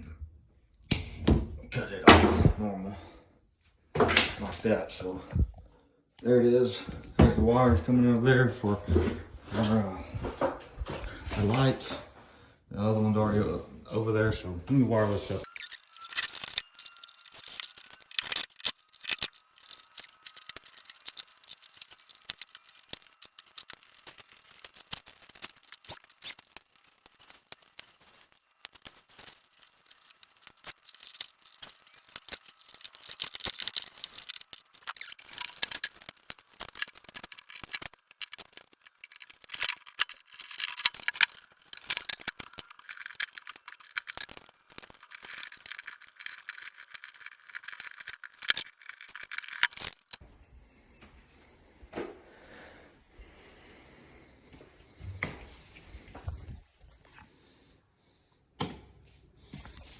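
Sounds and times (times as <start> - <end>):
hand tools working on wires: 15.4 - 50.2.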